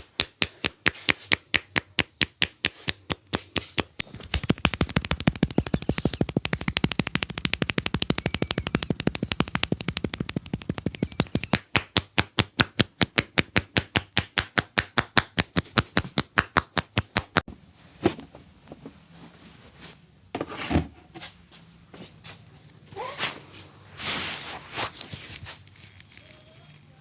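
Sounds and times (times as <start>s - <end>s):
hands chopping and slapping: 0.0s - 17.5s
soft rubbing: 2.8s - 11.6s, 23.0s - 27.0s.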